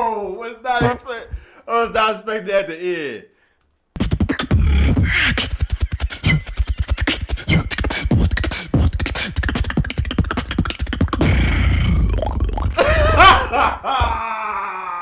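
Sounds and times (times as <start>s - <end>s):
beatboxing clicks and snare hits: 3.7s - 12.8s
deep beatboxed bass: 4.0s - 12.8s.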